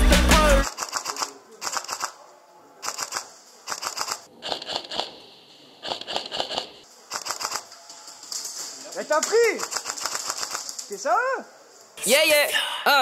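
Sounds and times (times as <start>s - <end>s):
airsoft rifles firing bursts: 9.6s - 10.8s.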